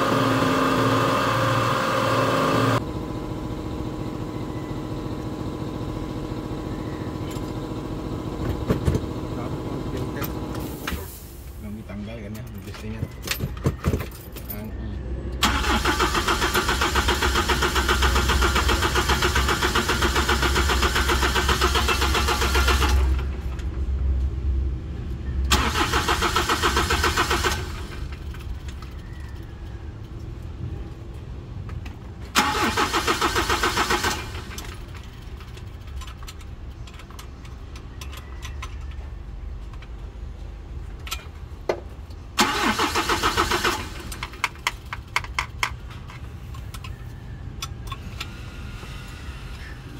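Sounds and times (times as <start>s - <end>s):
diesel engine cranking: 15.3s - 23.9s, 25.4s - 30.2s, 31.8s - 40.1s, 40.8s - 49.9s.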